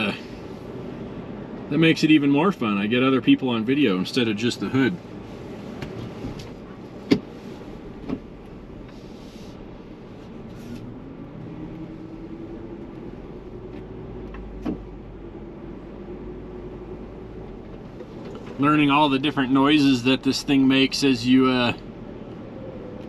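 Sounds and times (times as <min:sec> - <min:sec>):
truck engine running: 0:00.0 - 0:23.0.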